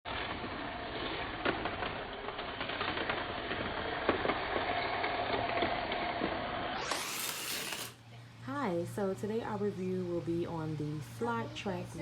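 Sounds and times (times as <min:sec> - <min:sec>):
toy cars rattling on plastic track: 0:00.1 - 0:08.0
toy car motor whine: 0:00.2 - 0:08.0.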